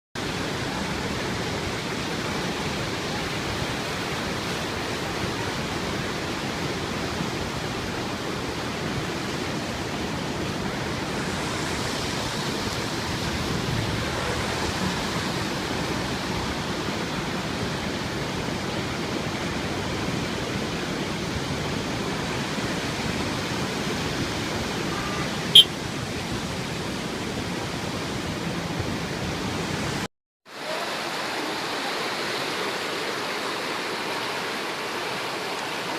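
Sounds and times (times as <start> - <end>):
heavy rain falling: 0.2 - 25.5.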